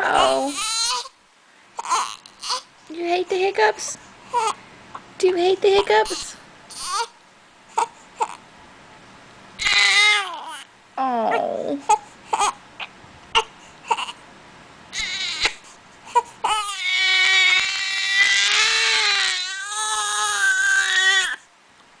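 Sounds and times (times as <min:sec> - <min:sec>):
baby crying wail: 0:00.0 - 0:01.2, 0:01.8 - 0:02.7, 0:06.1 - 0:07.2, 0:09.6 - 0:10.7, 0:13.4 - 0:14.2, 0:14.9 - 0:21.4.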